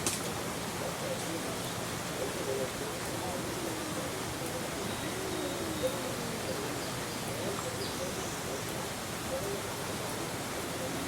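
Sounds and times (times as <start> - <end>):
steady background hiss: 0.0 - 11.0.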